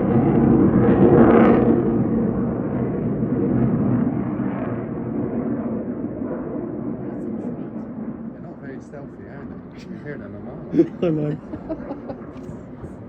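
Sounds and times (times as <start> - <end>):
jets passing overhead: 0.0 - 13.0.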